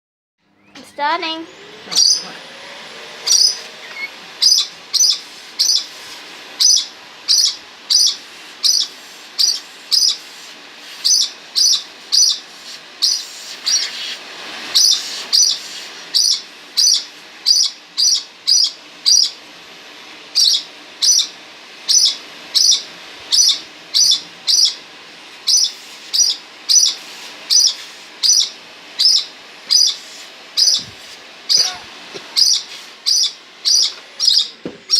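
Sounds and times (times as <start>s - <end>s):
bird chirping high calls: 0.6s - 2.4s, 3.2s - 5.9s, 6.6s - 10.2s, 11.0s - 12.4s, 13.0s - 14.0s, 14.8s - 19.4s, 20.4s - 24.8s, 25.5s - 34.9s.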